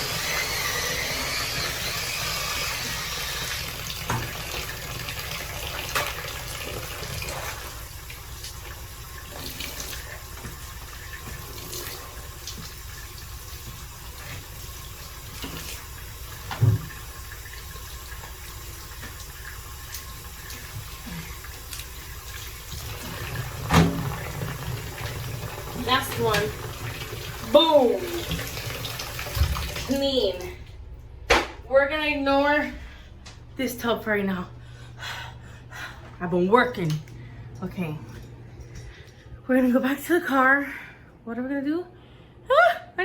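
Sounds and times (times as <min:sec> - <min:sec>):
tap water running: 0:00.0 - 0:31.1.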